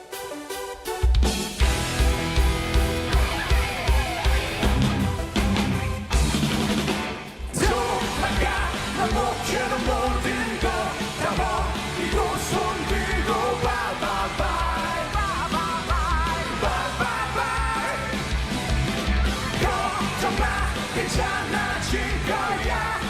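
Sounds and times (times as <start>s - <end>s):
live rock band playing: 0.4s - 23.0s
shouted sung vocals: 7.5s - 18.3s, 19.4s - 23.0s.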